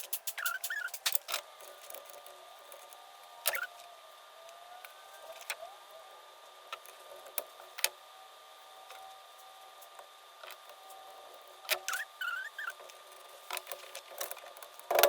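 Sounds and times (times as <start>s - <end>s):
clicks of small parts and tools: 0.0s - 2.3s.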